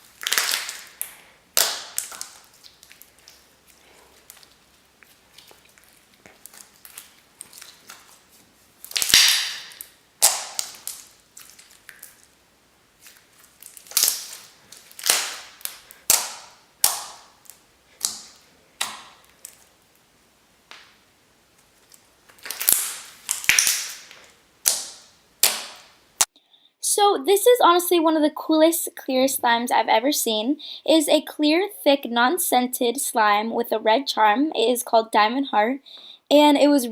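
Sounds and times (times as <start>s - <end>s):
slime popping and clicking: 0.2s - 3.4s, 8.9s - 12.3s, 13.6s - 19.6s, 22.4s - 25.9s.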